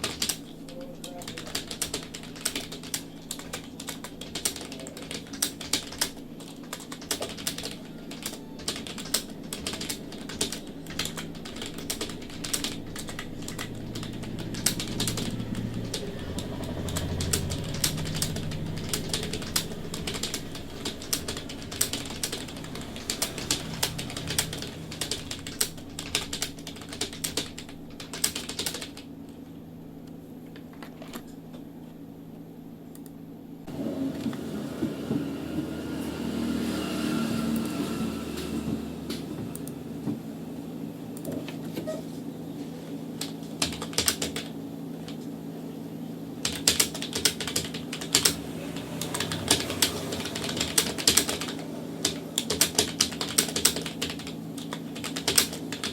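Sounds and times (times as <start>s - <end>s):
typing on computer keyboard: 0.0s - 29.1s, 43.2s - 45.2s, 46.4s - 55.9s
steady low hum: 0.0s - 55.9s
low rumble: 9.3s - 28.0s.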